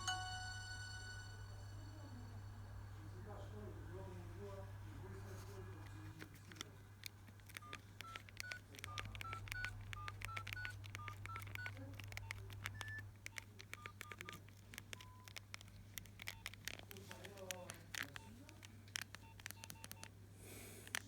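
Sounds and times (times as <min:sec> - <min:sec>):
sharp clicks: 0:05.8 - 0:21.0
mobile phone electronic beeps: 0:07.5 - 0:15.4, 0:16.2 - 0:16.6, 0:18.0 - 0:20.1.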